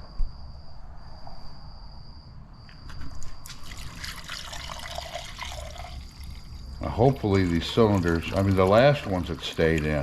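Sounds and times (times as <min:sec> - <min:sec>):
vinegar poured trickling and splashing: 0:03.4 - 0:10.0.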